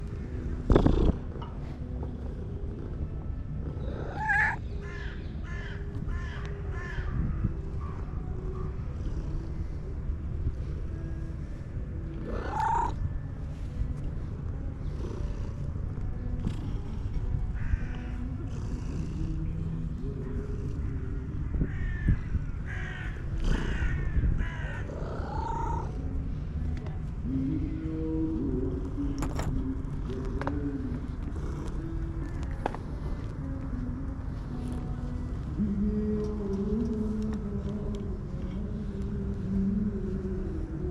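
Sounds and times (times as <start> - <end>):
steady low rumble: 0.0 - 40.9
harsh animal calls: 3.8 - 7.1, 12.2 - 13.0, 21.7 - 26.0.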